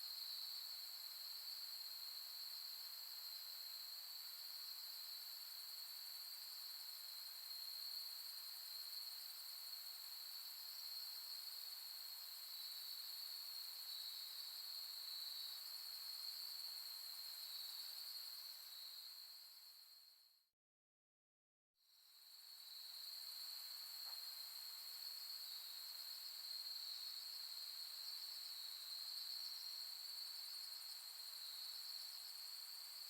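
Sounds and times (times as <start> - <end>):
faint hiss: 21.9 - 33.0.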